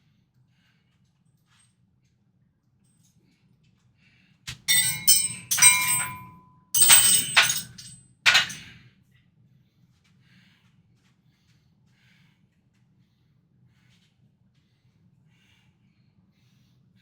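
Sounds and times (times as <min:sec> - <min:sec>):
metal weights clanking: 0:04.5 - 0:08.7.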